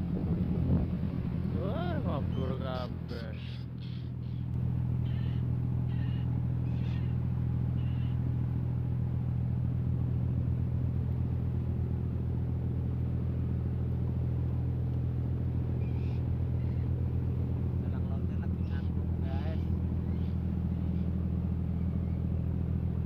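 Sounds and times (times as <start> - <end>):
boat engine running: 0.0 - 23.0
seabirds calling: 1.2 - 9.0, 13.0 - 23.0.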